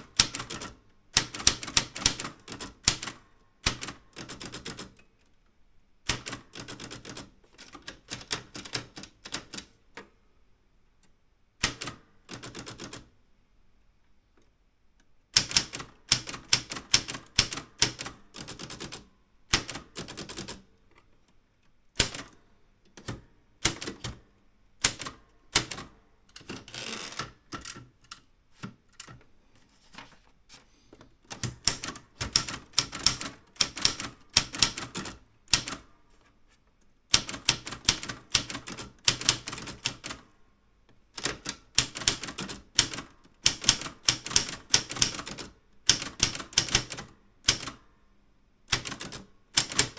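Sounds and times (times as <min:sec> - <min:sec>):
typewriter key strikes: 0:00.0 - 0:04.9, 0:06.1 - 0:07.3, 0:11.6 - 0:13.1, 0:15.4 - 0:20.6, 0:22.0 - 0:22.4, 0:23.0 - 0:24.2, 0:31.3 - 0:35.8, 0:37.1 - 0:40.3, 0:41.2 - 0:47.8, 0:48.7 - 0:49.9.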